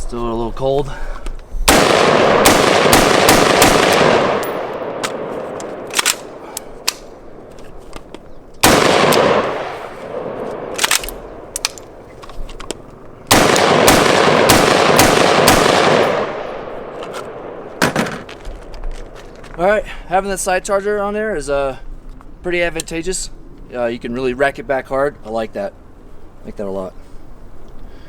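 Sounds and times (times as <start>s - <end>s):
rifle firing rapid shots: 1.7s - 6.4s, 8.6s - 11.1s, 13.3s - 16.5s.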